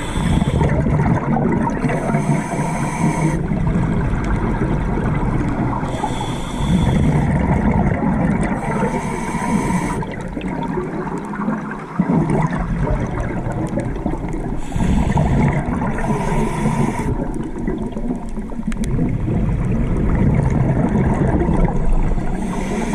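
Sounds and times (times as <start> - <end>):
scuba regulator breathing underwater: 0.0 - 3.8, 5.1 - 10.6, 13.1 - 17.8, 22.2 - 22.9.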